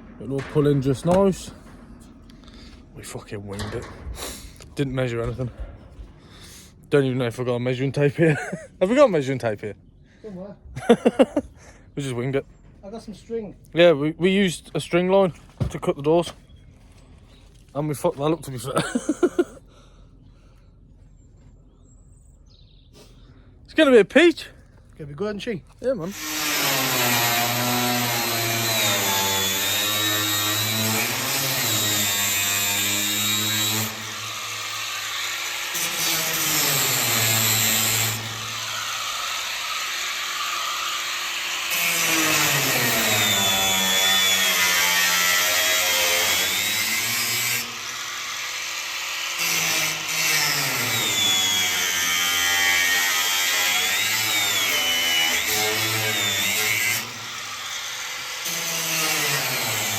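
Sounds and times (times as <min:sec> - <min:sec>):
angle grinder cutting metal: 0:26.1 - 0:59.9.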